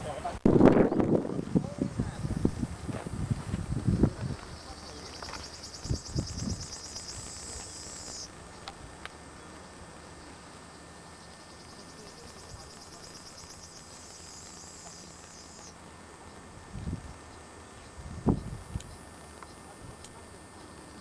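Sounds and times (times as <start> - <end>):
wind rumble on microphone: 0.3 - 4.8, 5.8 - 7.3, 16.6 - 19.0
insect pulsing buzz: 2.1 - 15.8.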